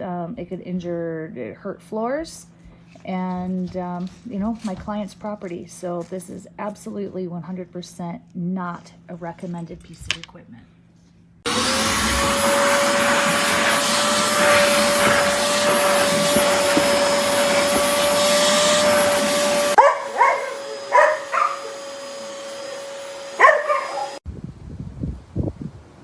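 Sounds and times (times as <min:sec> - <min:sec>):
vacuum cleaner air rush: 0:11.5 - 0:24.2
vacuum motor whine: 0:11.5 - 0:24.2
dog barking: 0:19.8 - 0:21.8, 0:23.4 - 0:24.2.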